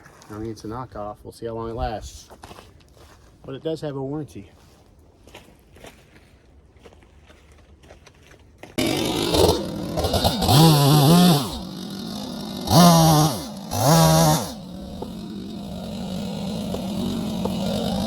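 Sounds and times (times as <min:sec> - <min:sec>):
chainsaw revving and idling: 0:08.8 - 0:18.0.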